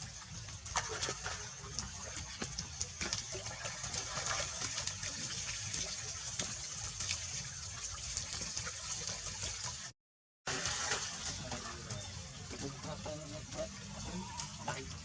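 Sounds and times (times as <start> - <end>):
water rushing: 10.5 - 15.0.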